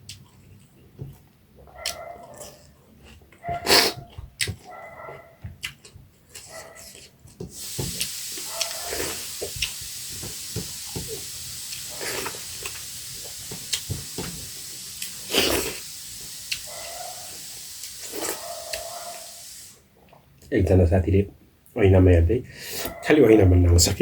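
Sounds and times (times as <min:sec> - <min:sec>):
wet chewing and lip smacks: 0:01.6 - 0:10.4, 0:14.9 - 0:17.0
steady hiss: 0:07.5 - 0:19.8.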